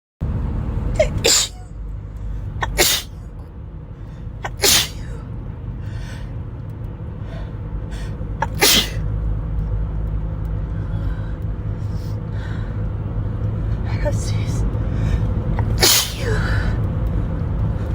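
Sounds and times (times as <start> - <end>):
car cabin rumble: 0.2 - 17.9
person sneezing: 1.0 - 1.7, 2.6 - 3.1, 4.4 - 5.2, 8.4 - 9.0, 15.6 - 16.5
sharp catch of breath: 7.2 - 9.0, 14.8 - 16.8.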